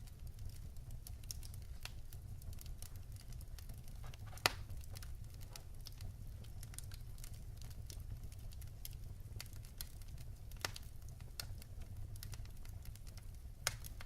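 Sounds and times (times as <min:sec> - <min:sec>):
fire pops and snaps: 0:00.0 - 0:14.0
low rumble of fire: 0:00.0 - 0:14.0
wood fire crackling: 0:00.0 - 0:14.0.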